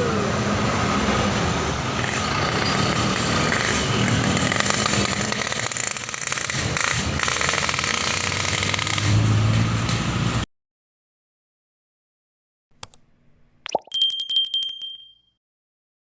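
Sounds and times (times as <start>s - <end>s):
bus engine driving past: 0.0s - 5.4s, 8.9s - 10.5s
road traffic noise: 0.0s - 10.5s.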